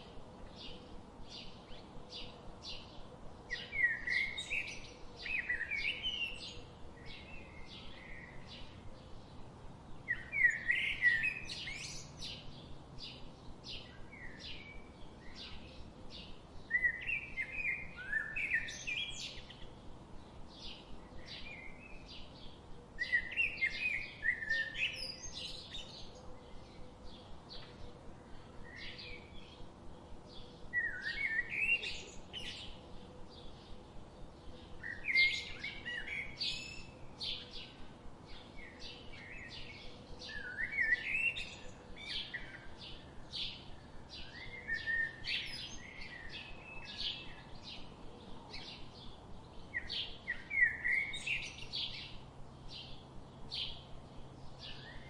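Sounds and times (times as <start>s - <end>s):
songbirds chirping: 0.0s - 55.0s
bird warbled song phrase: 20.6s - 27.7s.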